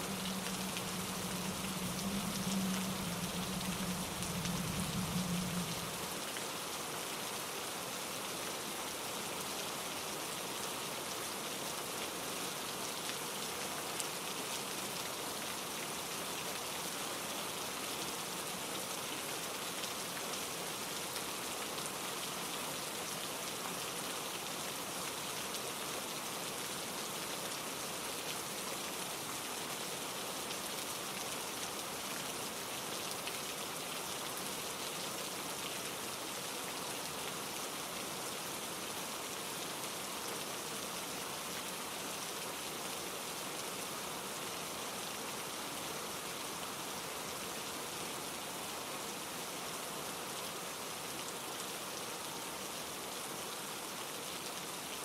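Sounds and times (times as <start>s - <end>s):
low drone: 0.0s - 6.4s
steady rain falling: 0.0s - 55.0s.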